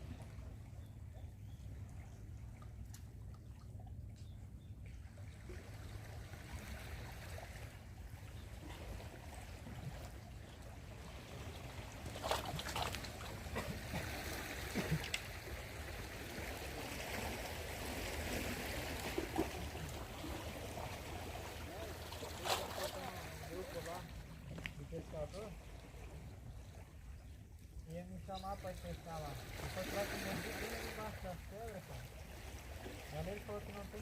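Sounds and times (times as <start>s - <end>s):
sea water lapping: 0.0s - 34.0s
short splashes or knocks: 11.6s - 15.5s.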